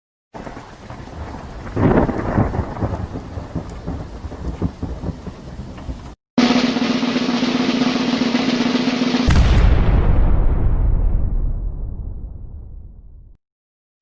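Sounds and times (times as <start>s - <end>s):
thunder rumbling: 0.4s - 8.4s, 9.2s - 13.0s
rain hiss: 0.4s - 8.9s.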